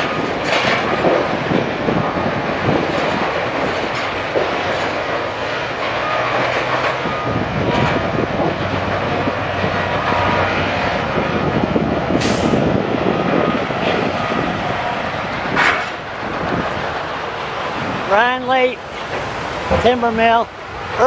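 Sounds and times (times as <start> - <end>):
sawmill machinery rattling: 0.0 - 21.0
short hiss: 12.2 - 12.6.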